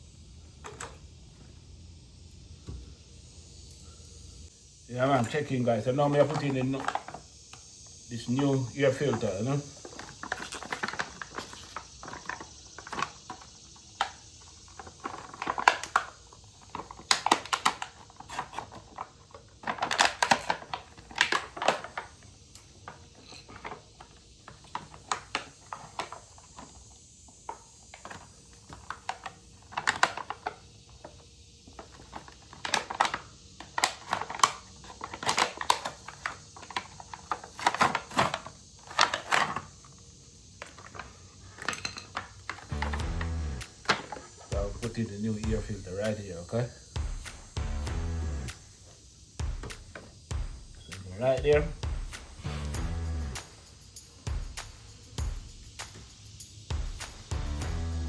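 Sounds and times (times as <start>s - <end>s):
small parts clicking and rattling: 5.1s - 46.3s.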